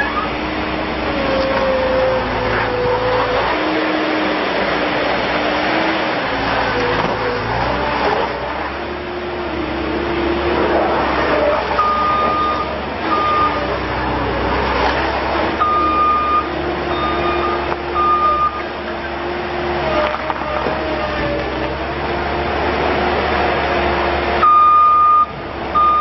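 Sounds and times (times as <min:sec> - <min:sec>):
diesel engine running: 0:00.0 - 0:26.0
back-up alarm beeping: 0:11.8 - 0:13.7, 0:15.6 - 0:18.6, 0:24.4 - 0:26.0.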